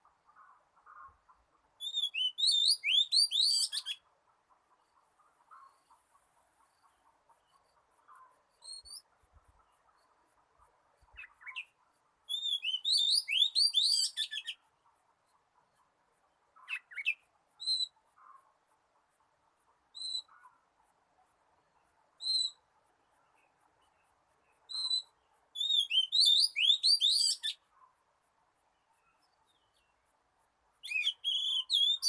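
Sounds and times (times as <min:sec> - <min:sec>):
bird singing whistled notes: 0:01.8 - 0:04.0, 0:08.5 - 0:09.1, 0:11.0 - 0:14.6, 0:16.6 - 0:18.0, 0:19.9 - 0:20.3, 0:22.2 - 0:22.6, 0:24.7 - 0:27.6, 0:30.8 - 0:32.0.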